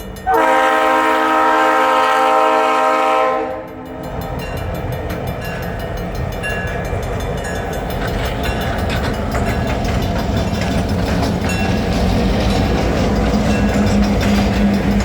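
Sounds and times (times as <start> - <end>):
freight train passing: 0.0 - 15.0
steel wheels clicking over rails: 3.5 - 15.0.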